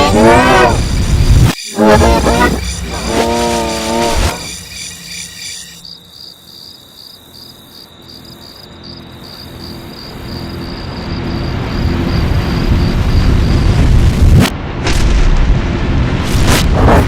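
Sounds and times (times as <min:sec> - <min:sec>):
cricket chirping: 0:00.0 - 0:13.9
low rumble: 0:10.6 - 0:17.0.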